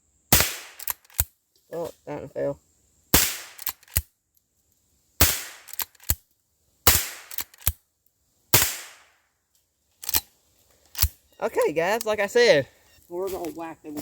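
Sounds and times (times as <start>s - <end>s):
rifle shots ringing out: 0.3s - 1.2s, 3.2s - 4.0s, 5.2s - 5.9s, 6.9s - 7.7s, 8.5s - 9.1s
rifle lever clicks: 0.8s - 1.3s, 3.6s - 4.1s, 5.6s - 6.2s, 7.3s - 7.8s, 10.0s - 10.3s.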